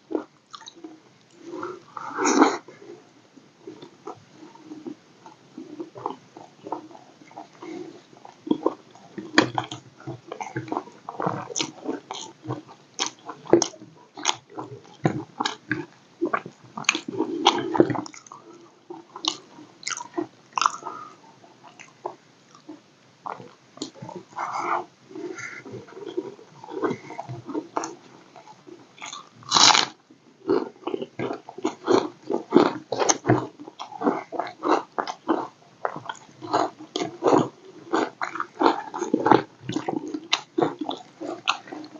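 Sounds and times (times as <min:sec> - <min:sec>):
person chewing and biting: 0:19.2 - 0:21.0, 0:25.2 - 0:29.9.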